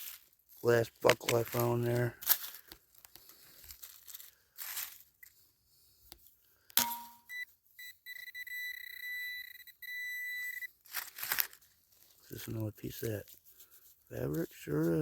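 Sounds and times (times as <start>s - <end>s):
metal detector high beep: 6.8s - 10.8s
scraping in soil: 10.9s - 15.0s.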